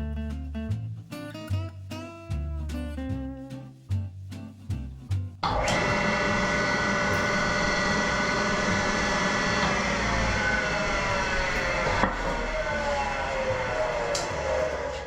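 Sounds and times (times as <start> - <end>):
background music: 0.0 - 15.0
jointer and dust collector running: 5.4 - 15.0.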